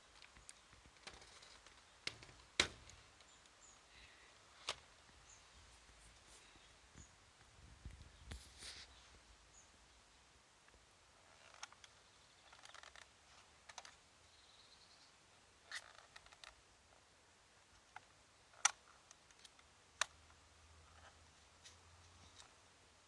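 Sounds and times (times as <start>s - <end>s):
plastic clicks and scrapes: 0.1s - 3.4s, 11.3s - 14.0s, 15.7s - 16.6s, 17.8s - 20.2s.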